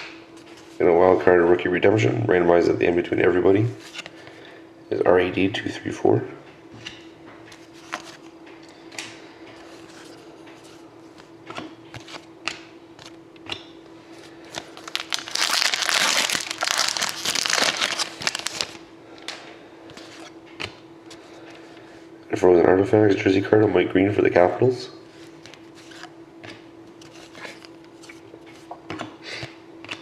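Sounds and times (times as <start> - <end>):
faint steady hum: 0.0 - 30.0
plastic packaging crinkling: 14.5 - 19.4.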